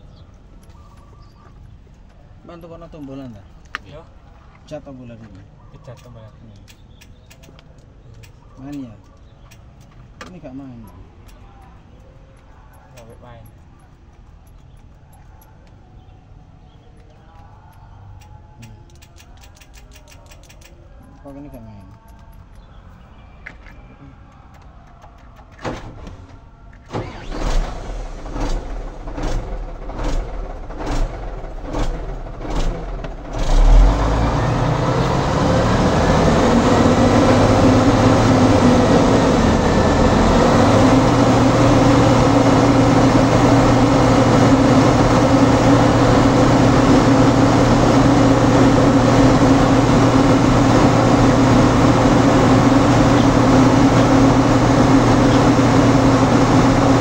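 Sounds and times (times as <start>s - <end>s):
diesel engine cranking and idling: 24.4s - 57.0s.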